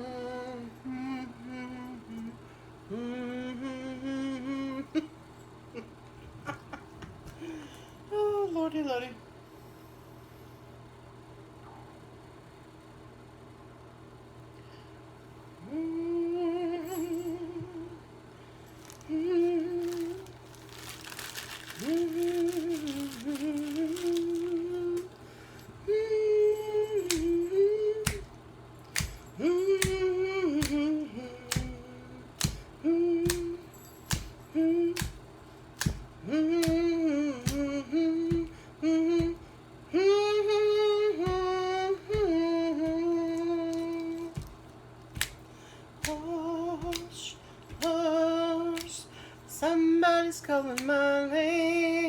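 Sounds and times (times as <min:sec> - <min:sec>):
woman humming a slow melody: 0:00.0 - 0:06.0, 0:15.6 - 0:18.2, 0:18.9 - 0:20.4, 0:21.4 - 0:25.2, 0:25.8 - 0:28.3, 0:29.2 - 0:35.2, 0:36.2 - 0:44.4.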